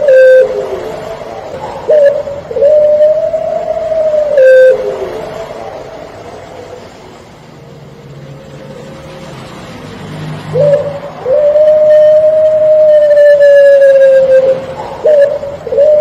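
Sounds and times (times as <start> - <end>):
dove cooing: 0.0 - 7.0, 10.5 - 16.0.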